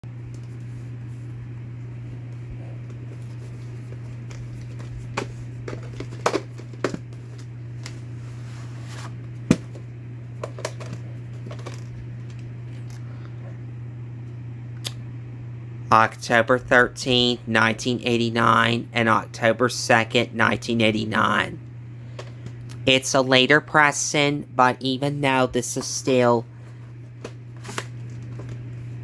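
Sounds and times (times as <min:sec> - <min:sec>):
low electrical hum: 0:00.0 - 0:29.0.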